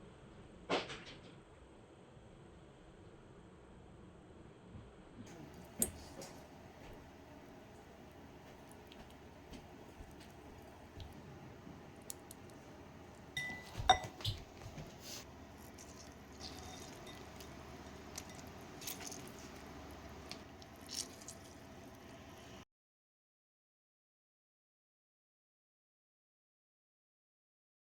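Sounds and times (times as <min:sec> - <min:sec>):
sharp ringing clink: 0:13.4 - 0:14.0.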